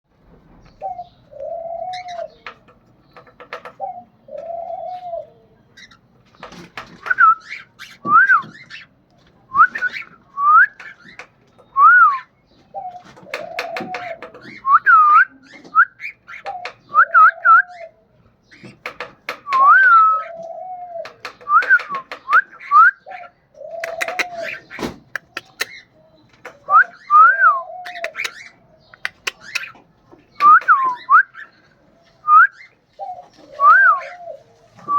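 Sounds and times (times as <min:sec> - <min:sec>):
cockatiel clicking chatter: 0:23.8 - 0:25.8, 0:27.9 - 0:29.8.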